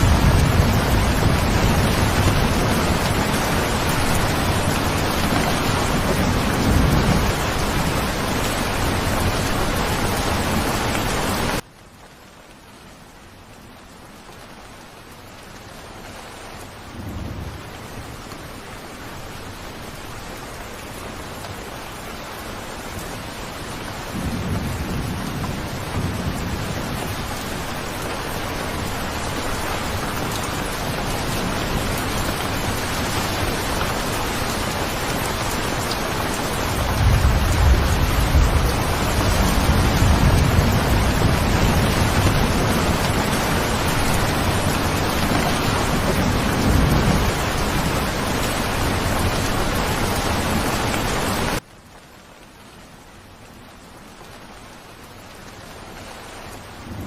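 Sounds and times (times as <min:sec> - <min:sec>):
rolling thunder: 0:00.0 - 0:10.8, 0:36.5 - 0:51.4
steady rain: 0:00.0 - 0:57.0.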